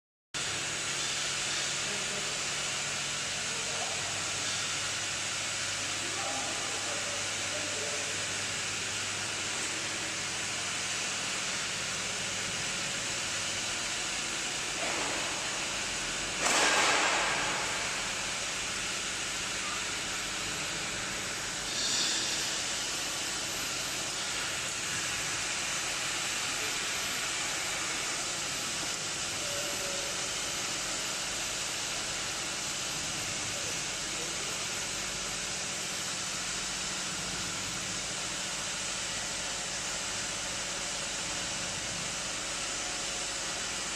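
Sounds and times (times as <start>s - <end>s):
welding machine hissing: 0.4s - 43.9s.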